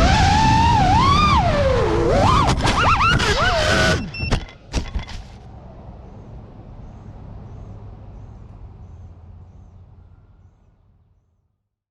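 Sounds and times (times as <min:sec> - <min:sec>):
steady low rumble: 0:04.1 - 0:11.2.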